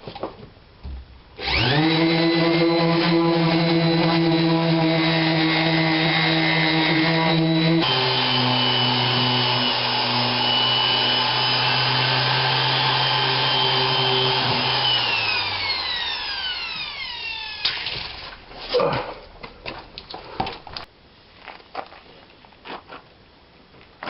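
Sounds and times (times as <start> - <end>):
electric power tool running: 1.4 - 17.7.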